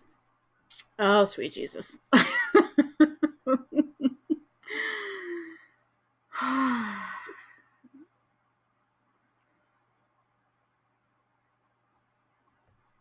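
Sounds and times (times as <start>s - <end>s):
woman laughing: 2.1s - 5.5s
woman sighing: 4.7s - 5.7s, 6.4s - 8.0s.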